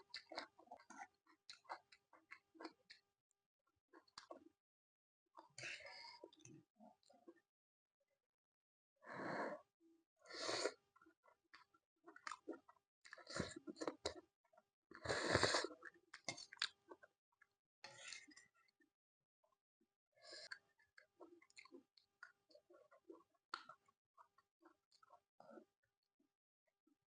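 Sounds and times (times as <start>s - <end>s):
chewing: 0.1s - 3.0s, 11.5s - 14.2s, 14.9s - 17.1s, 20.4s - 25.7s
slurping noodles: 14.9s - 16.8s.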